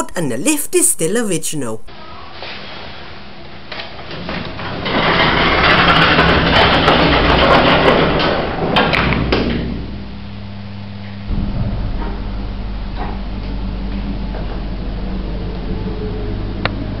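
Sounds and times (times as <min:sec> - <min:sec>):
lift machinery hum: 0:09.5 - 0:17.0
thump: 0:11.3 - 0:12.2.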